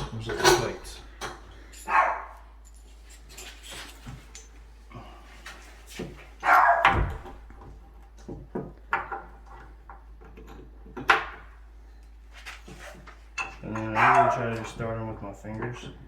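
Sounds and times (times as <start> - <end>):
dog barking: 1.8 - 2.5, 6.4 - 7.3, 13.8 - 14.6.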